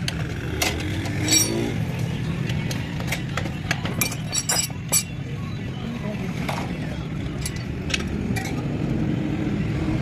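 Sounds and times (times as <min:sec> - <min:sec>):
metallic clinks and taps: 0:00.6 - 0:01.7, 0:03.0 - 0:05.1.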